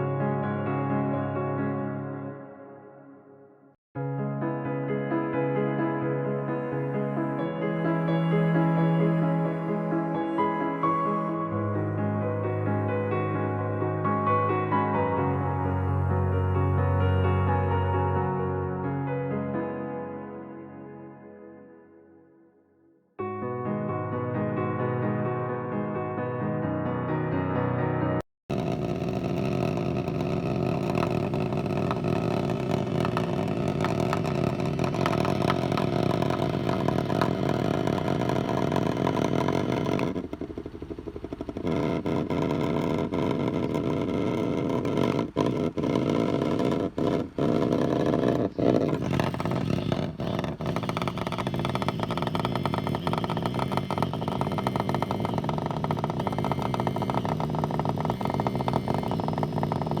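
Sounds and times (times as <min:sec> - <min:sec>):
vibration motor buzzing: 0:28.5 - 1:00.0.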